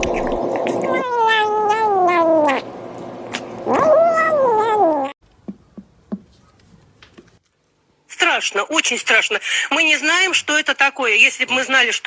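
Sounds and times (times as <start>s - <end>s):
cat yowling: 0.7s - 2.7s, 3.7s - 5.2s.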